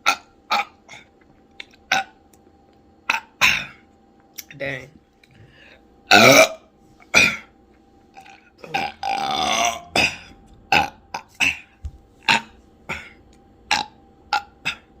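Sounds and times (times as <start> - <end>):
person burping loudly: 6.1 - 7.5, 8.2 - 15.0.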